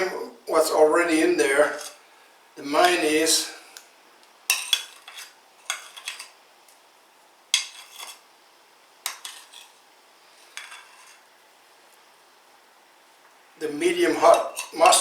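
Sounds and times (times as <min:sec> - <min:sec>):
spoon clattering against bowl: 0:14.3 - 0:14.8.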